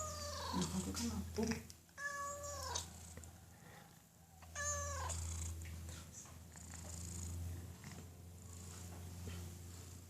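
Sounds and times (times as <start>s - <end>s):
cat meowing: 0.0s - 0.8s, 2.0s - 2.9s, 4.4s - 5.2s
cat purring: 0.0s - 3.3s, 4.6s - 10.0s.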